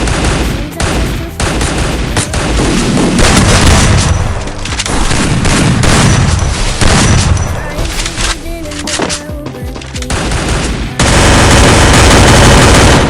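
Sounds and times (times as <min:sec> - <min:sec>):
explosions booming: 0:00.0 - 0:07.8
video game gunfire: 0:00.0 - 0:13.0.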